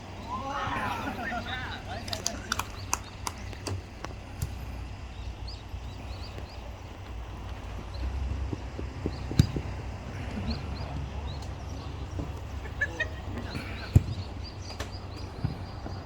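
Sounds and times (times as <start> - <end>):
small birds chirping: 0.0 - 16.0
football kick thuds: 8.4 - 10.0, 13.8 - 16.0.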